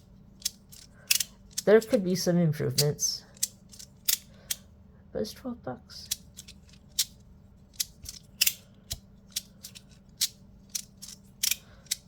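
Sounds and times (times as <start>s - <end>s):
plastic fidget toy clicking: 0.4s - 2.0s, 6.0s - 12.0s.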